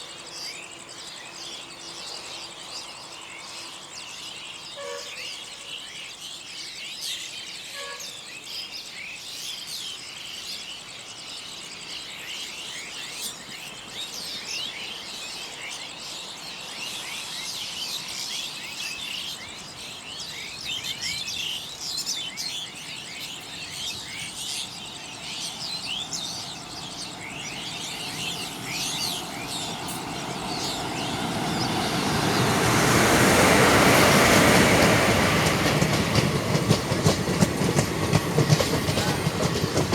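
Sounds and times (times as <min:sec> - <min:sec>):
small birds chirping: 0:00.0 - 0:39.9
train rushing: 0:13.7 - 0:39.9.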